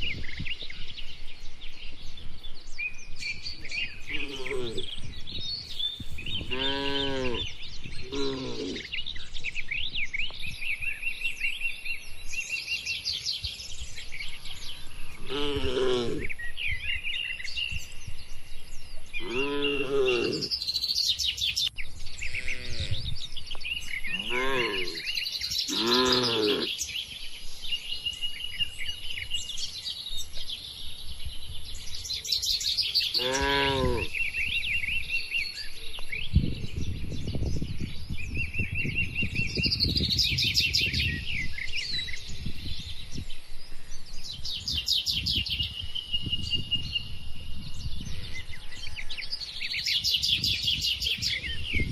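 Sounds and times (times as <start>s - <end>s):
small birds chirping: 0.0s - 51.9s
cattle lowing: 4.0s - 5.0s, 6.2s - 9.0s, 15.1s - 16.4s, 19.2s - 20.6s, 24.0s - 26.8s, 33.1s - 34.1s.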